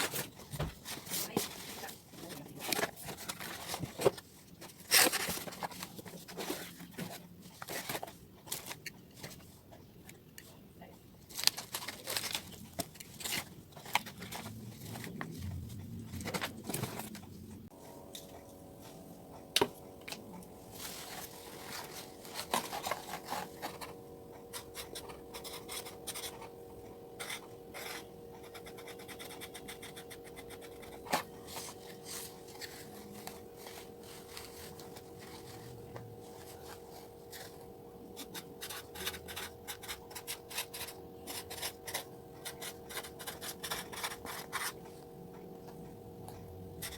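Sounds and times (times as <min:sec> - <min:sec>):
faint steady hum: 0:00.0 - 0:46.9
packaging rubbing and scratching: 0:11.3 - 0:17.2, 0:20.7 - 0:26.6, 0:27.8 - 0:37.6.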